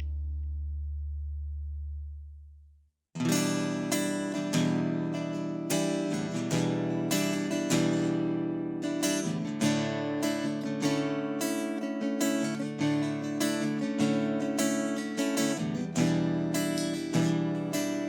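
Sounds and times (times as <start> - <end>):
low bass note: 0.0 - 2.6
acoustic guitar strumming chords: 3.2 - 18.0.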